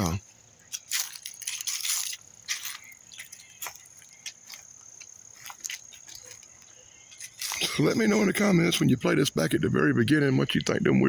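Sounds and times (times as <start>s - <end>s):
footsteps through dry brush: 0.6s - 8.2s
twigs clicking and snapping: 0.7s - 7.7s.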